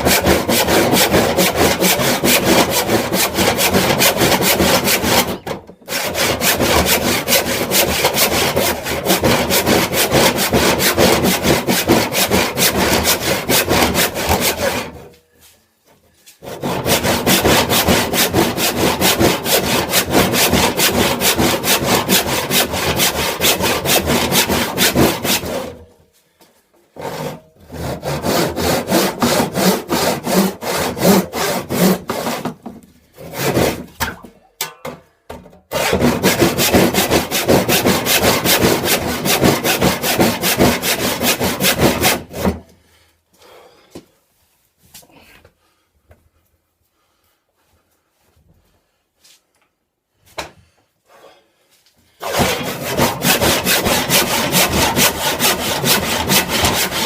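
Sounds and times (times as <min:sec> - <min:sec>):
hand saw cutting wood: 0:00.0 - 0:15.2, 0:16.4 - 0:25.9, 0:26.9 - 0:34.3, 0:35.7 - 0:42.8, 0:52.2 - 0:57.0.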